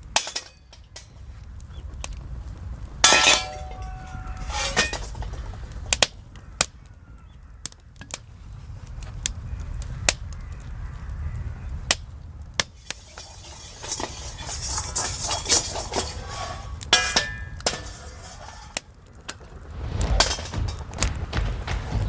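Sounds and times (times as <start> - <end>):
low steady rumble: 15.8 - 22.0.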